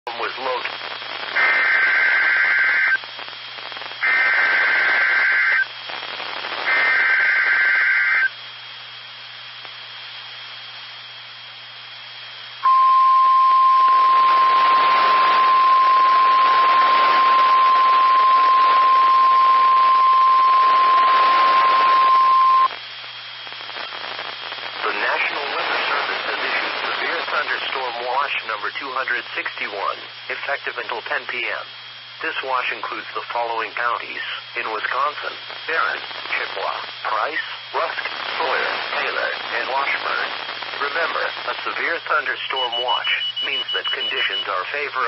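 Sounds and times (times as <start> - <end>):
radio hiss: 0.1 - 45.0
digital data bursts: 1.3 - 3.0, 4.0 - 8.3, 12.7 - 22.7, 34.6 - 45.0
steady warning alarm tone: 12.6 - 22.7, 42.6 - 44.6.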